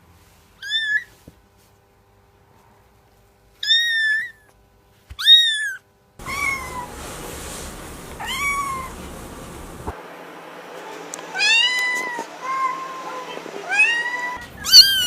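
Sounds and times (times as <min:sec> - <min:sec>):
kitten mewing: 0:03.6 - 0:04.5, 0:05.2 - 0:06.9, 0:08.2 - 0:09.0, 0:11.4 - 0:15.0
background hiss: 0:06.2 - 0:10.2.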